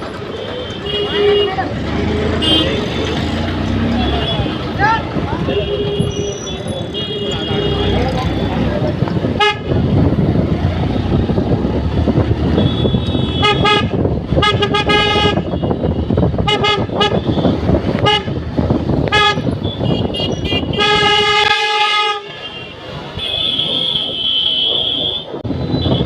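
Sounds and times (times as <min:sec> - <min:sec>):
wind and road noise: 0:00.0 - 0:26.0
motorcycle horn honking: 0:02.4 - 0:02.8, 0:12.6 - 0:15.8, 0:19.1 - 0:26.0.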